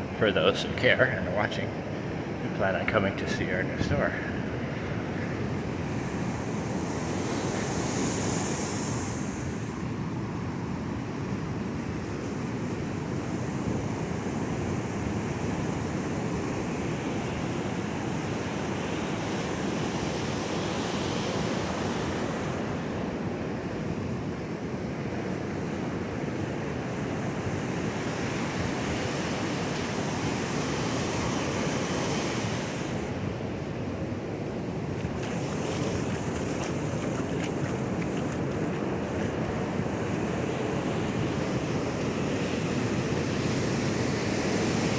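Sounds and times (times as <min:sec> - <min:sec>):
wind buffeting microphone: 0:33.3 - 0:40.8
surf breaking on beach: 0:35.0 - 0:40.8.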